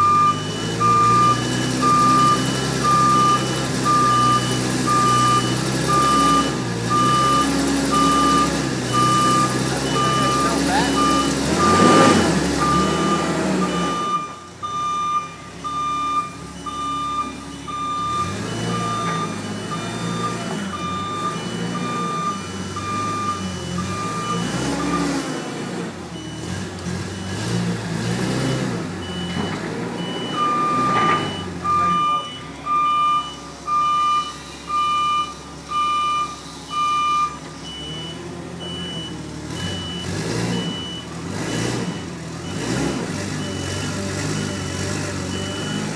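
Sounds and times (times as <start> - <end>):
fainter higher beep: 0.0 - 25.1, 30.0 - 40.0
engine running: 0.0 - 45.9
vehicle reversing alarm beeping: 0.0 - 45.9.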